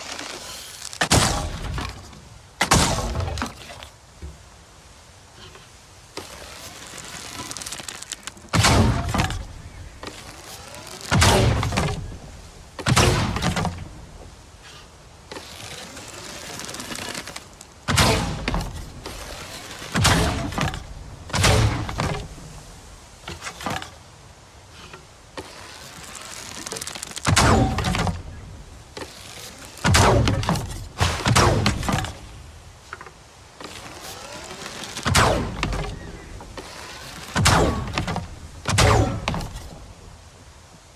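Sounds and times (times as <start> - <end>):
steady hiss: 0.0 - 40.9
arrow shot and thunk: 1.0 - 3.9, 8.5 - 10.2, 11.0 - 12.1, 12.8 - 13.9, 17.9 - 22.3, 27.2 - 28.3, 29.8 - 32.3, 35.0 - 39.8.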